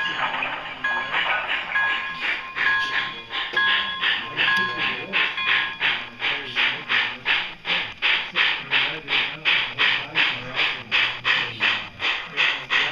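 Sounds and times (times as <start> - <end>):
model steam locomotive chuffs: 0.0 - 12.9.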